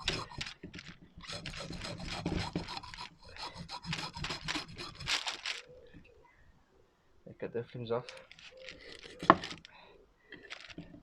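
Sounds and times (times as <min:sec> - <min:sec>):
blade scraping fish scales: 0:00.0 - 0:00.6, 0:01.2 - 0:05.7.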